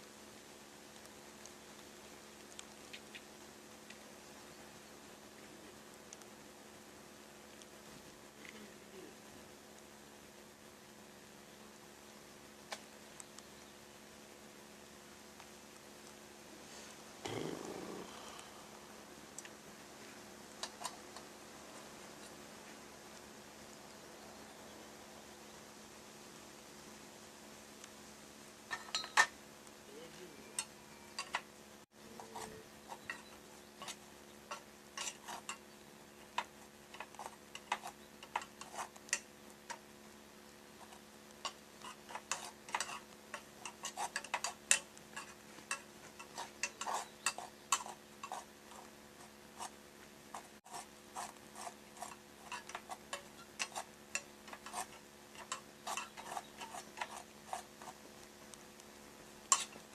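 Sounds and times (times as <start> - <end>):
faint steady hum: 0.0 - 59.9
metal kettle ticking and crackling: 32.8 - 39.9, 40.7 - 49.8, 50.4 - 59.9.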